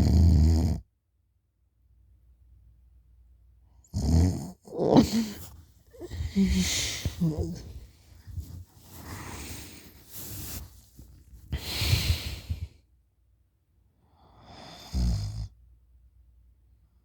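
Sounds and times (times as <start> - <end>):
person breathing: 5.0 - 12.8.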